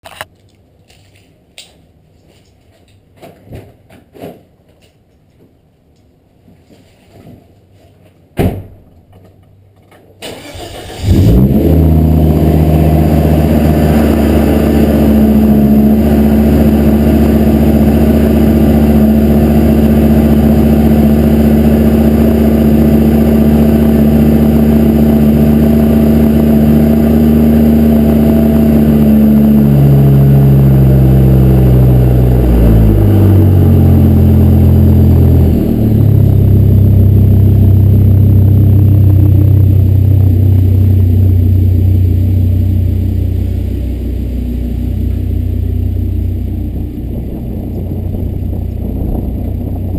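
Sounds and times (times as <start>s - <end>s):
car engine starting and idling: 9.6s - 49.9s.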